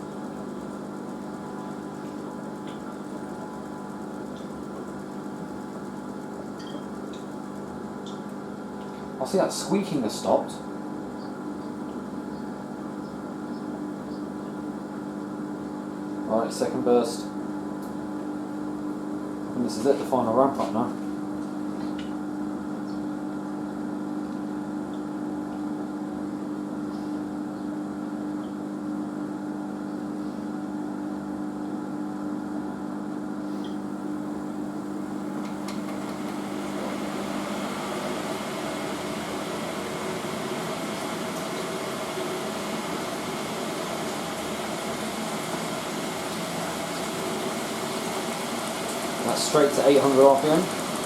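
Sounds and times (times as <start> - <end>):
washing machine drum spinning: 0.0 - 8.3, 34.8 - 51.0
washing machine motor hum: 0.0 - 51.0.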